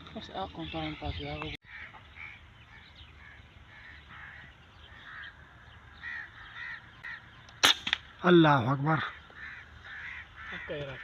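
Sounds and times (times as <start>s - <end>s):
birds calling: 0.0s - 11.0s
air rifle firing: 7.6s - 8.1s.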